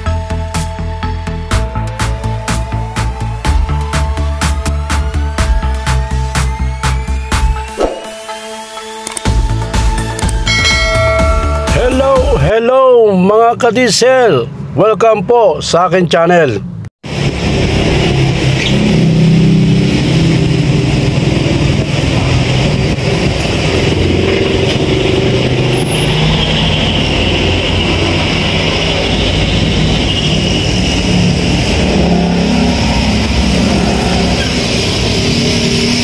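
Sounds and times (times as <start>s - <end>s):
engine humming: 17.1s - 36.0s.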